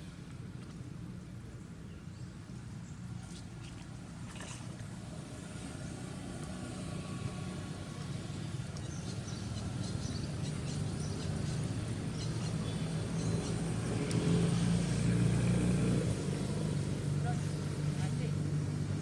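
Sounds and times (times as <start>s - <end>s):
vehicle engine humming: 0.0s - 19.0s.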